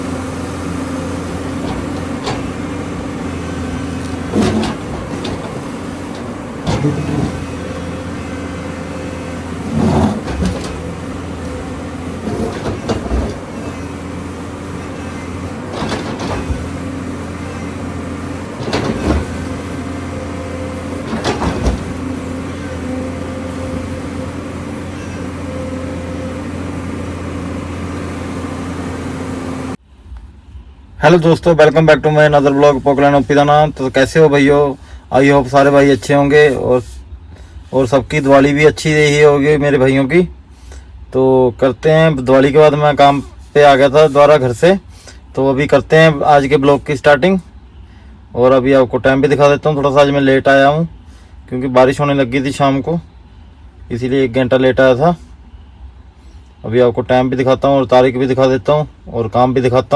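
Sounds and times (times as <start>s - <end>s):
excavator diesel engine running: 0.0s - 29.8s.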